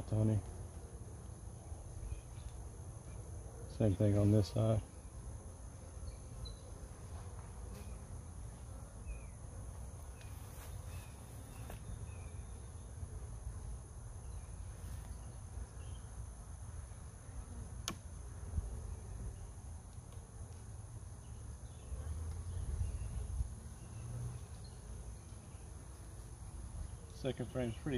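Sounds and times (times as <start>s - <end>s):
bees buzzing: 14.4s - 19.5s.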